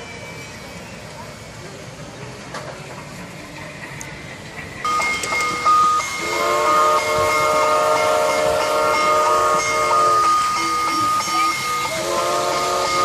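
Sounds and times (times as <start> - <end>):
hissing steam: 0.0 - 13.0
multi-note train whistle: 5.6 - 13.0.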